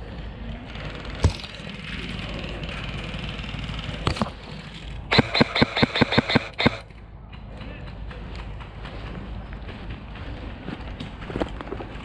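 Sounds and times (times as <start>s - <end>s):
airsoft gun shot: 5.1s - 6.8s.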